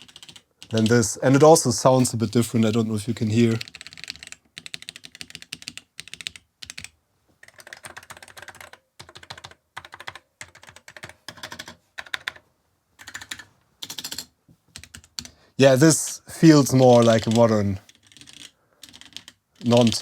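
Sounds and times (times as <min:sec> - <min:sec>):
keyboard keys clacking: 0:00.0 - 0:01.6.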